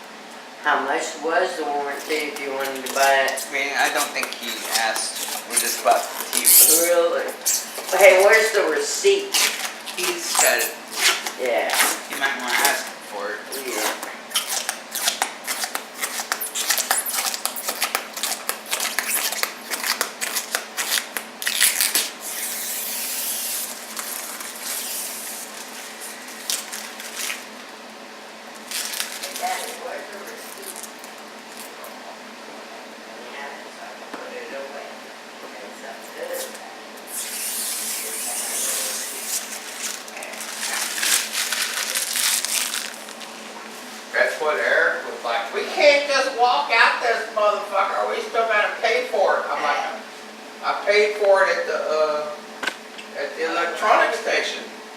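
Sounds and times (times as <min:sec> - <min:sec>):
rustling and crinkling: 0:02.0 - 0:08.6, 0:23.6 - 0:27.6, 0:28.6 - 0:31.8, 0:38.4 - 0:44.1
rustling handling noises: 0:38.7 - 0:44.2
sharp crackles: 0:39.3 - 0:43.3.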